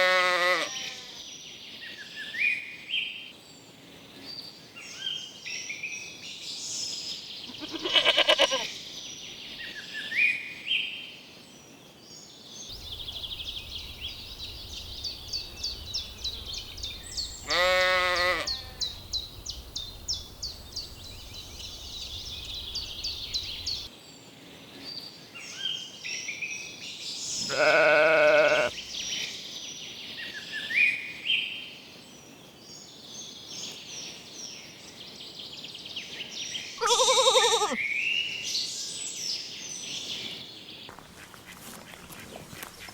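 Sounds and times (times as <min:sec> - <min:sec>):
lambs bleating: 0:00.0 - 0:01.2, 0:07.5 - 0:08.7, 0:17.4 - 0:19.0, 0:27.5 - 0:28.8, 0:36.8 - 0:37.8
birds singing: 0:12.2 - 0:23.9, 0:27.1 - 0:31.5, 0:35.5 - 0:42.9.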